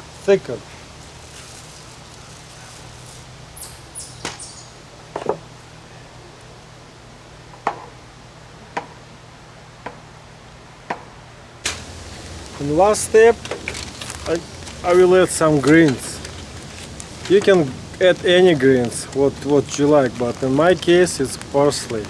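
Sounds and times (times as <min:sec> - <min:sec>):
steady low hum: 0:11.7 - 0:22.0.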